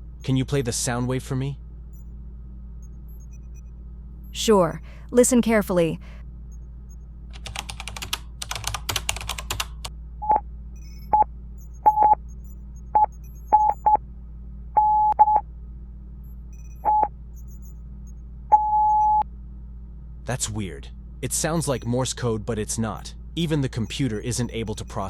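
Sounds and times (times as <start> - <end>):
morse code electronic beeps: 2.8 - 3.7, 10.2 - 14.0, 14.8 - 15.4, 16.3 - 17.8, 18.5 - 19.2, 21.4 - 22.0, 23.4 - 25.0
computer keyboard typing: 7.3 - 9.9.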